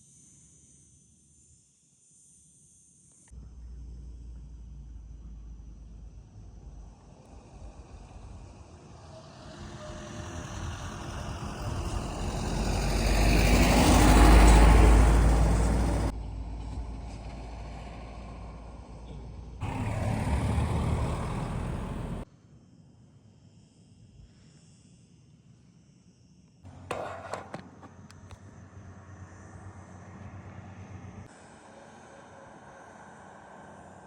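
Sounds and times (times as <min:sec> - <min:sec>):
vehicle passing by: 0:06.7 - 0:22.2.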